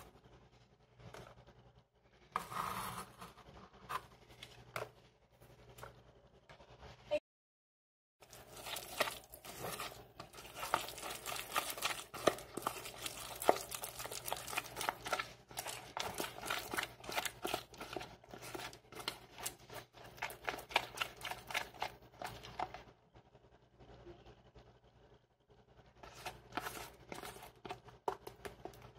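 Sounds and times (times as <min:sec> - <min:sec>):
crinkling and crackling handling: 0:08.2 - 0:22.8.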